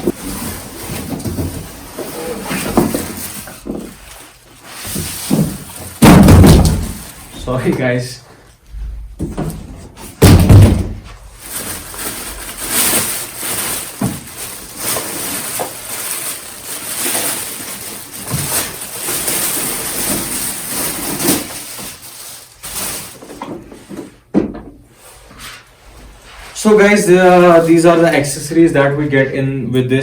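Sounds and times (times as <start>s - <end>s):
packaging rustling and crinkling: 0.0s - 8.0s, 10.9s - 24.2s
heavy thump: 5.3s - 7.1s, 8.8s - 11.2s.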